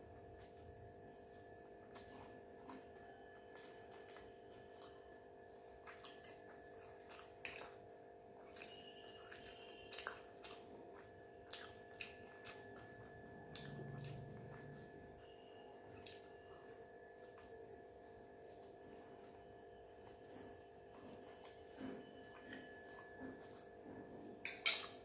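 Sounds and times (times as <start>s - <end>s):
electrical hum: 0.0s - 25.0s
person chewing: 0.4s - 7.8s, 8.4s - 14.9s, 15.9s - 17.8s.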